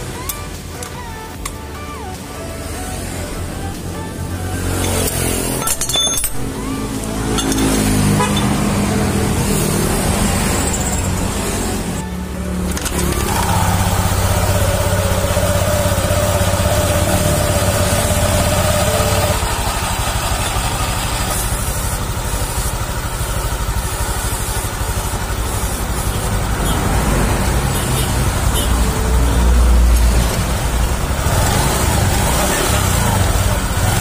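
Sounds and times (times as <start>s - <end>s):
scooter engine running: 6.4s - 34.0s.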